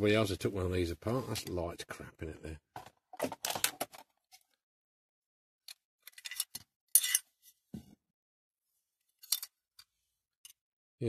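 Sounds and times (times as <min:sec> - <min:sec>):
small metal parts clinking: 0:06.0 - 0:07.3, 0:09.2 - 0:09.5.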